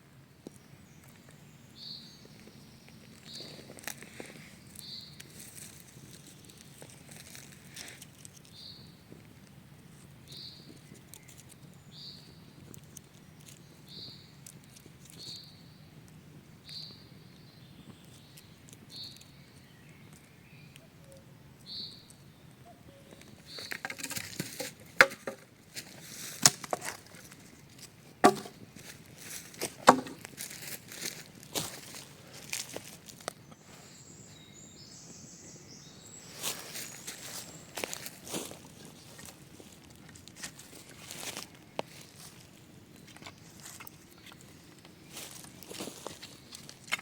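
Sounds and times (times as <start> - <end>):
sharp clicks and knocks: 23.6 - 25.4, 28.2 - 28.6.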